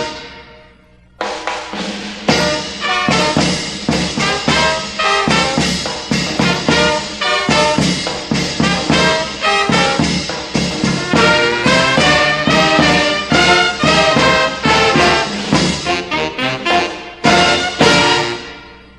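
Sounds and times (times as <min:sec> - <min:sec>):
brass band playing a lively tune: 0:00.0 - 0:00.4, 0:01.5 - 0:18.9
cornets playing melody: 0:00.0 - 0:00.5, 0:02.3 - 0:18.9.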